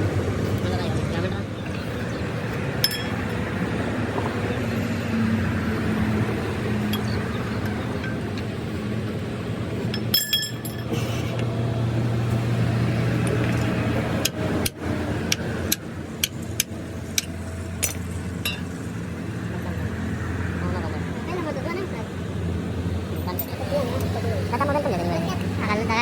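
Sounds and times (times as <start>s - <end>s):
metal parts clinking: 2.8s - 3.2s, 9.9s - 11.0s, 17.2s - 18.7s.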